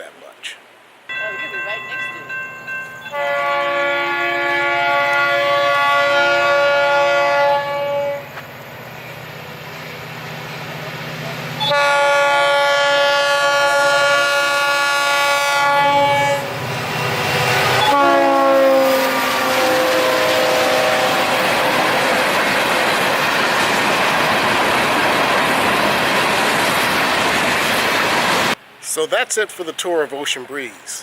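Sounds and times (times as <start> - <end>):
train horn blasts: 3.0 - 8.4, 11.6 - 22.1
rumble and clatter of rolling train: 19.6 - 28.6.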